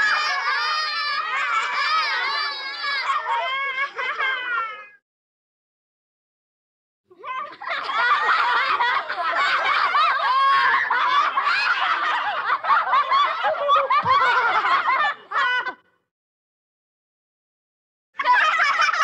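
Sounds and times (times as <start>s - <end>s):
children laughing: 0.0s - 5.0s, 7.1s - 16.0s, 18.2s - 19.0s.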